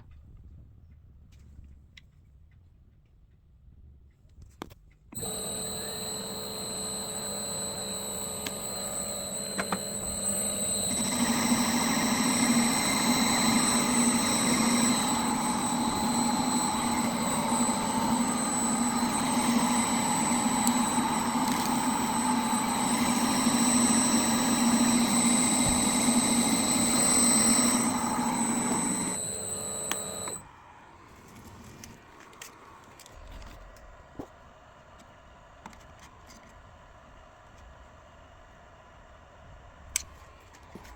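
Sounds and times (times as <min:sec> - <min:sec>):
metal lathe whining: 0:05.2 - 0:30.4.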